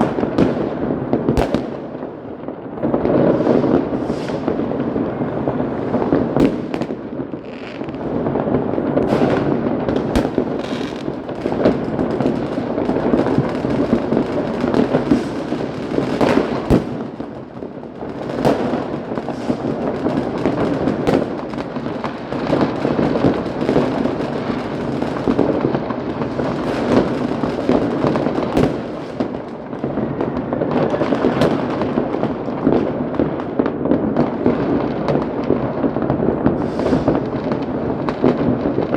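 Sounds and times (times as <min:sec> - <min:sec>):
fireworks and firecrackers crackling: 0:00.0 - 0:38.9
sharp single firework bangs: 0:01.3 - 0:01.9, 0:08.7 - 0:12.4, 0:14.7 - 0:19.7, 0:28.6 - 0:29.2.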